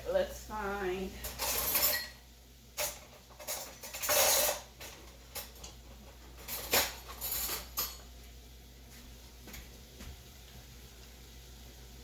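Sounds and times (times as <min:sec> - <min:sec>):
kitchen items clattering: 0:01.2 - 0:02.2, 0:02.8 - 0:08.1.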